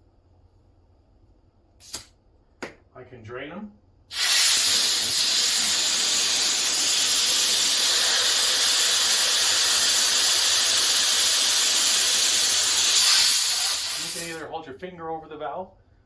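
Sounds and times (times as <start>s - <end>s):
compressed air hissing: 1.8s - 2.1s, 4.1s - 14.5s.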